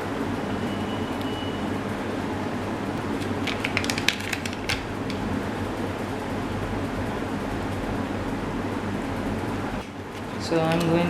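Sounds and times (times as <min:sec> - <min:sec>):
room hum and hiss: 0:00.0 - 0:11.0
handling clicks and crackles: 0:03.2 - 0:05.2.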